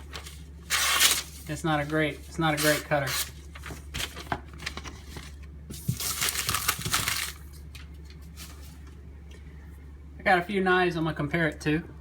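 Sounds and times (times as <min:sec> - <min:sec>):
loud crinkling rustle: 0:02.6 - 0:08.8.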